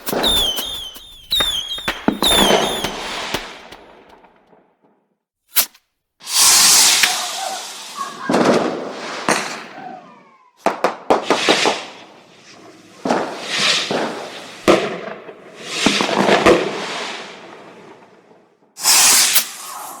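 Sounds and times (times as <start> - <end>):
hissing firework bursts: 0.0 - 4.3, 5.6 - 9.7, 12.8 - 14.7, 15.6 - 17.5, 18.8 - 20.0
firework cracks: 0.0 - 4.7, 5.6 - 9.7, 18.8 - 20.0
fireworks bangs: 0.0 - 4.9, 6.2 - 12.0, 13.0 - 18.0.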